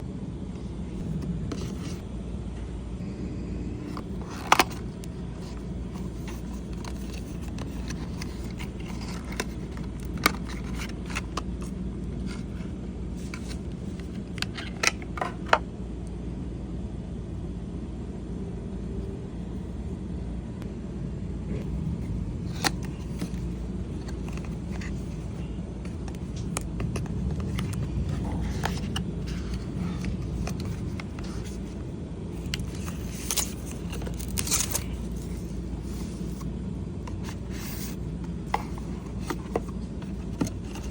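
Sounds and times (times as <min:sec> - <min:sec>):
steady low rumble: 0:00.0 - 0:40.9
packaging being scraped: 0:03.9 - 0:12.6, 0:32.4 - 0:36.4.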